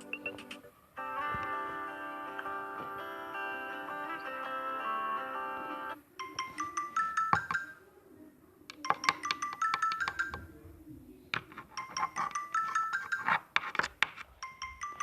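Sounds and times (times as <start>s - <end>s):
phone ringtone chiming notes: 0.0s - 7.8s, 8.8s - 10.6s, 11.7s - 13.4s, 14.4s - 15.0s
held ringtone chords: 0.0s - 7.9s, 8.8s - 10.6s, 11.7s - 13.4s, 14.4s - 15.0s.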